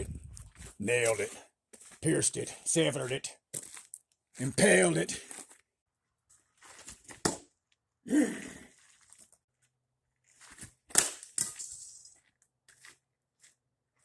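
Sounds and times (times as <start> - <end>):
rustling and scraping: 6.3 - 7.2
sharp cracks and knocks: 10.9 - 12.0.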